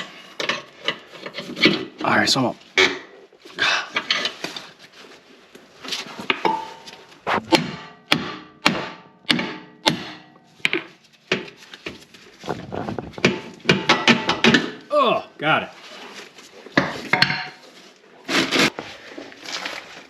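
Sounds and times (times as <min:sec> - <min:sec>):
hammer striking steel: 0:07.3 - 0:10.3.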